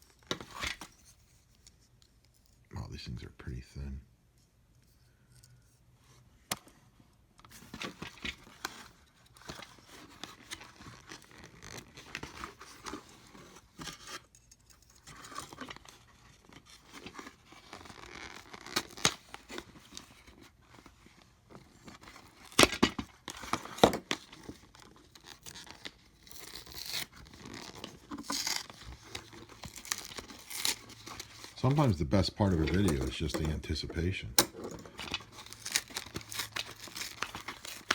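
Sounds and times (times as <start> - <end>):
packaging tearing and crinkling: 7.8 - 14.2, 14.8 - 21.0, 21.6 - 34.1, 34.8 - 37.9.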